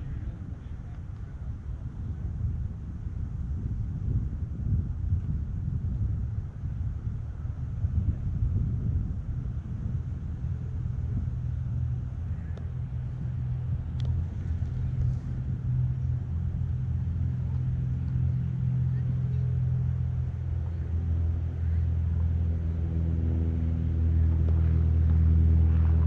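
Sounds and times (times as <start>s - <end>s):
vehicle engine rumbling: 0.0s - 26.0s.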